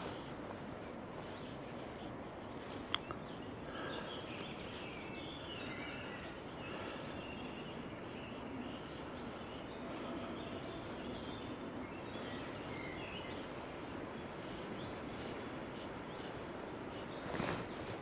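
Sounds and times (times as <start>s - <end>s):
birds singing faintly: 0.0s - 18.0s.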